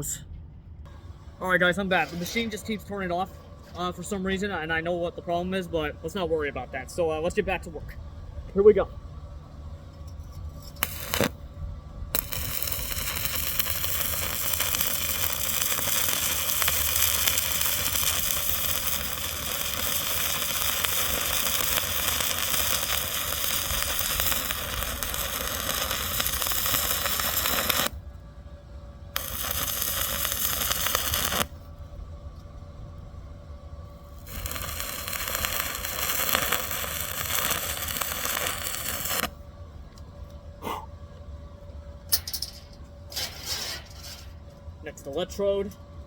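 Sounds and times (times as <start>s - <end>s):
welding machine low hum: 0.0s - 46.0s
welding arc crackling hiss: 10.6s - 11.4s, 12.2s - 28.0s, 29.2s - 31.7s, 34.0s - 39.4s.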